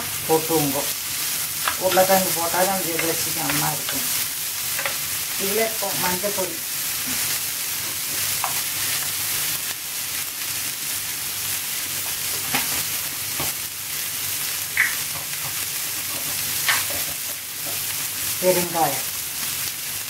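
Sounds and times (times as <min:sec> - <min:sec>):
vegetables sizzling in a pan: 0:00.0 - 0:20.0
spoon knocking against pan: 0:02.9 - 0:04.0, 0:04.8 - 0:05.0.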